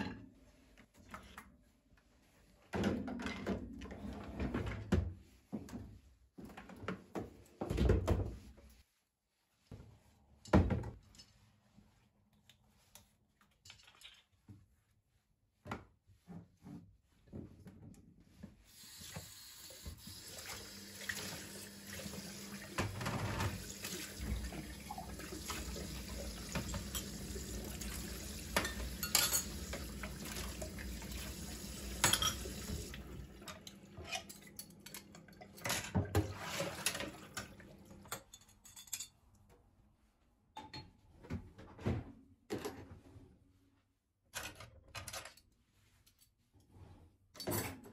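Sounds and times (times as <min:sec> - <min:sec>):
dishes and cutlery clinking: 0:28.5 - 0:29.8, 0:32.0 - 0:32.6, 0:38.1 - 0:39.2.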